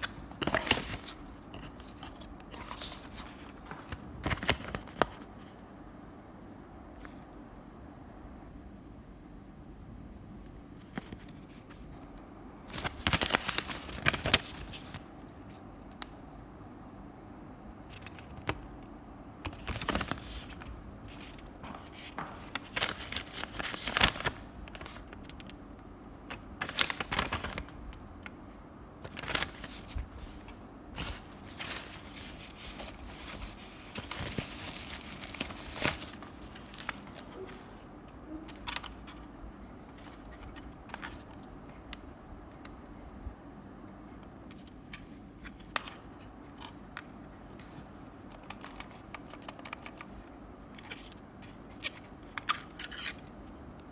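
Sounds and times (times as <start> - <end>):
packaging crinkling and tearing: 19.5 - 25.6, 26.3 - 27.8, 29.0 - 37.8.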